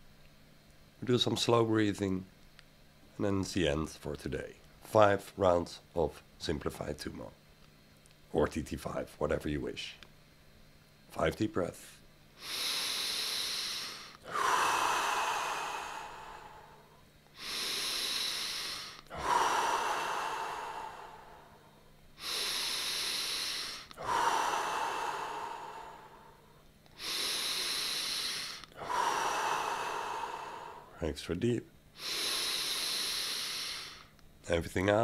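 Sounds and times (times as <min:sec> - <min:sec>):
person breathing deeply: 0:12.4 - 0:31.0, 0:32.0 - 0:34.2.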